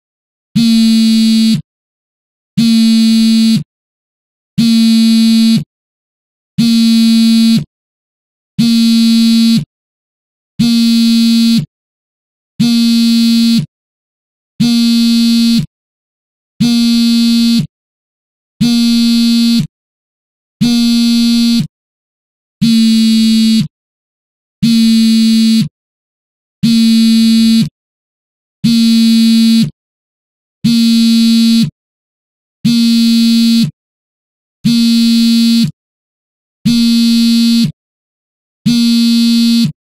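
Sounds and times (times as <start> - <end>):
phone vibrating on a table: 0.6 - 1.7, 2.6 - 3.7, 4.6 - 5.7, 6.6 - 7.7, 8.6 - 9.7, 10.6 - 11.7, 12.6 - 13.7, 14.6 - 15.7, 16.6 - 17.7, 18.6 - 19.7, 20.6 - 21.7, 22.6 - 23.7, 24.6 - 25.8, 26.6 - 27.8, 28.6 - 29.8, 30.6 - 31.8, 32.6 - 33.8, 34.6 - 35.8, 36.6 - 37.8, 38.6 - 39.8.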